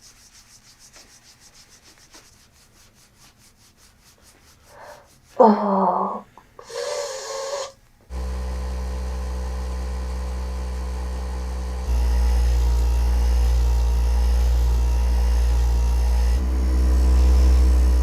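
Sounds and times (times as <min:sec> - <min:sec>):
electric motor hum: 0:08.1 - 0:18.0.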